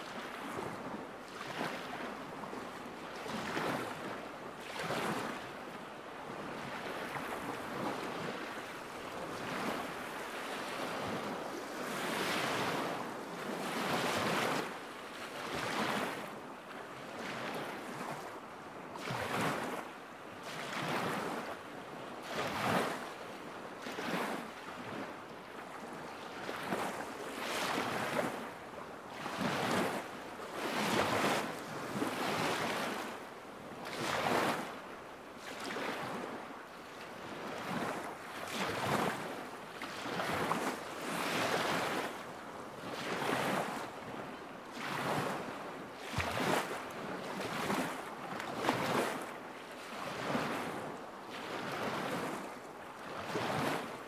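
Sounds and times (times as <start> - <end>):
waves lapping against shore: 0.0 - 54.0.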